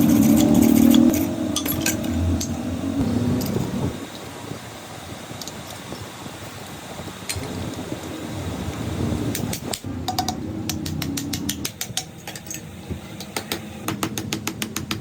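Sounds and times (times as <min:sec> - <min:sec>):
low steady background rumble: 0:00.0 - 0:15.0
sharp clicks and taps: 0:09.4 - 0:12.6.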